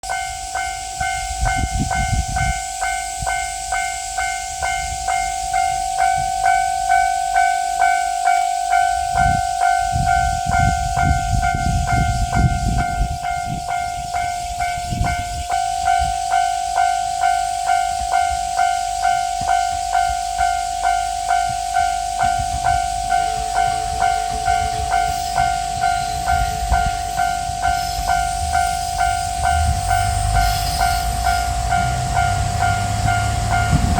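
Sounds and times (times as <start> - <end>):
level-crossing warning bell ringing: 0.0 - 33.9
low rumbles: 21.5 - 33.9.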